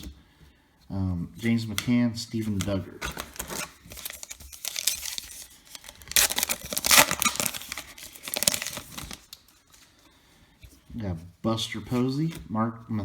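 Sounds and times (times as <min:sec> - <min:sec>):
card pack wrapper tearing: 0:02.5 - 0:09.4.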